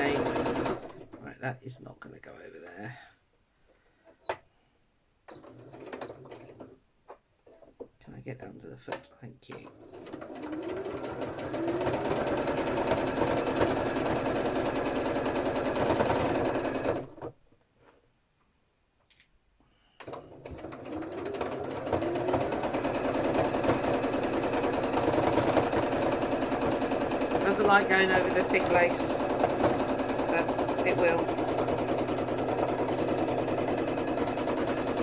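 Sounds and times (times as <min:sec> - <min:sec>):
sewing machine stitching: 0:00.0 - 0:01.3, 0:05.3 - 0:06.8, 0:09.5 - 0:17.3, 0:20.0 - 0:35.0.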